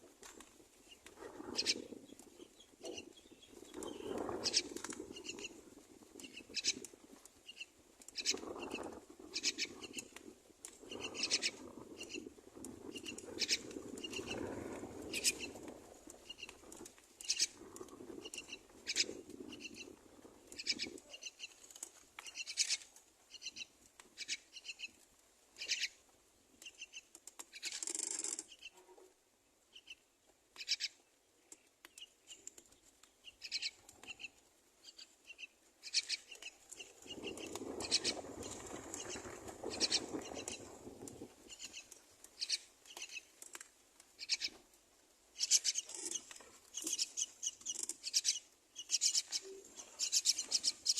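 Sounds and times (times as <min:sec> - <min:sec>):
nestlings begging calls: 0:10.9 - 0:12.2, 0:18.2 - 0:19.0, 0:33.2 - 0:34.2, 0:34.9 - 0:40.7, 0:44.2 - 0:44.6, 0:45.4 - 0:50.9
rustling in nest: 0:35.8 - 0:43.5, 0:45.4 - 0:50.9.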